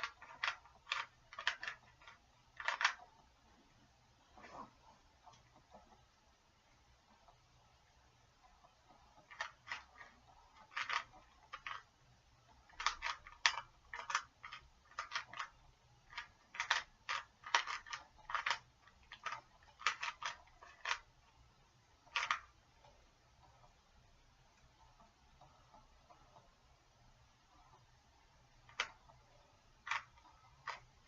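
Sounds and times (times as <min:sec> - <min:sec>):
plastic puzzle cube clicking: 0:00.0 - 0:03.1, 0:09.1 - 0:11.9, 0:12.6 - 0:21.1, 0:22.1 - 0:22.6, 0:28.6 - 0:29.2, 0:29.8 - 0:30.9.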